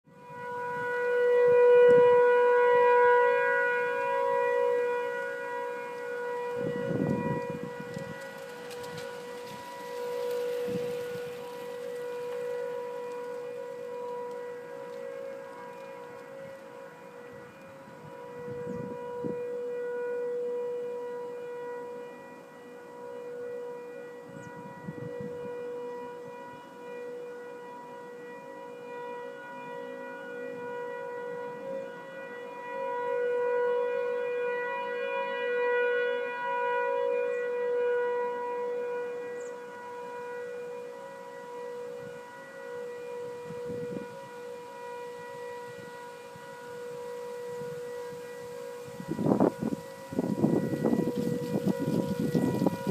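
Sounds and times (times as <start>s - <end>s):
warning siren steady tone: 0.1s - 52.9s
wind buffeting microphone: 6.5s - 12.2s, 17.3s - 19.5s, 24.3s - 25.6s, 43.4s - 44.2s, 47.5s - 52.9s.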